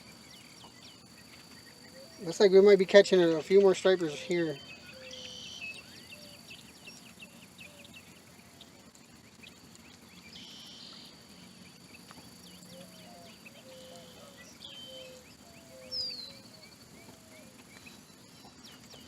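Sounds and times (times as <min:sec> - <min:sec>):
high insect drone: 0:00.0 - 0:19.0
bird chirps: 0:03.3 - 0:08.7, 0:09.4 - 0:19.0.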